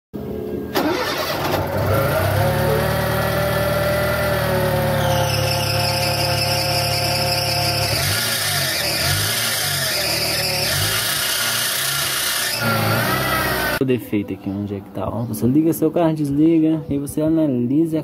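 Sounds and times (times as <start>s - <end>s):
car engine running: 0.8s - 13.8s
high-pitched belt squeal: 4.4s - 13.8s.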